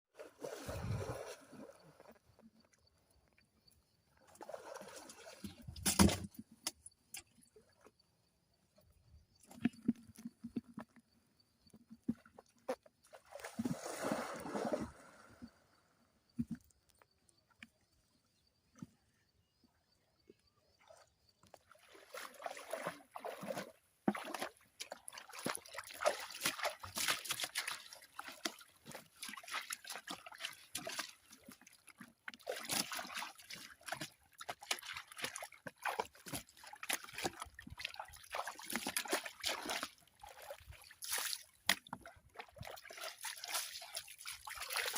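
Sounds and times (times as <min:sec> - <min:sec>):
hands splashing in muddy water: 0:13.1 - 0:15.3, 0:21.7 - 0:44.9.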